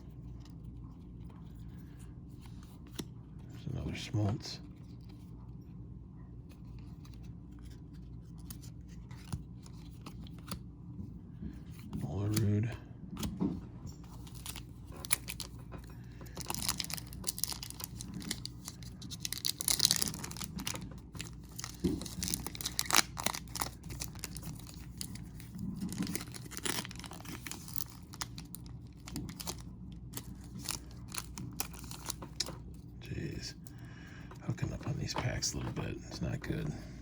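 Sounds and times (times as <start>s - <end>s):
cards rustling: 6.4s - 10.7s, 11.4s - 37.0s
wrapper crinkling and tearing: 14.1s - 32.6s.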